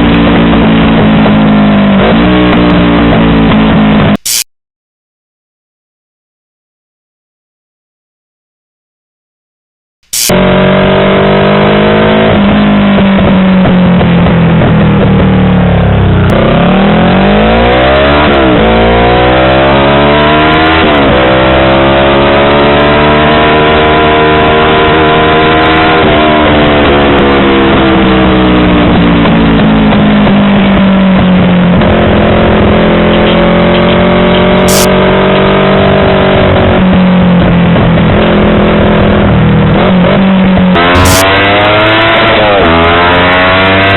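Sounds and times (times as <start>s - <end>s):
motorcycle engine revving: 10.1s - 43.9s.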